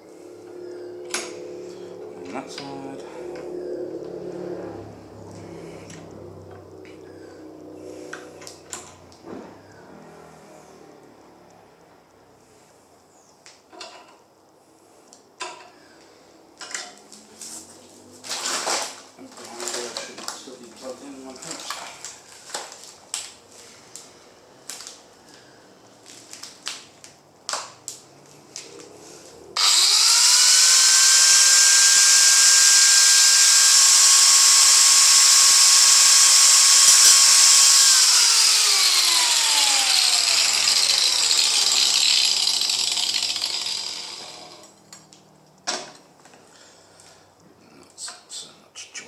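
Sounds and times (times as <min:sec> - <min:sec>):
electric power tool running: 0:29.6 - 0:44.8.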